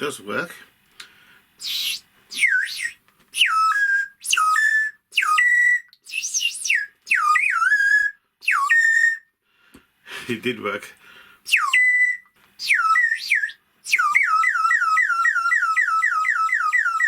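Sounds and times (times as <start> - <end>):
water bird whistle chirping: 1.6 - 9.3, 11.5 - 17.0.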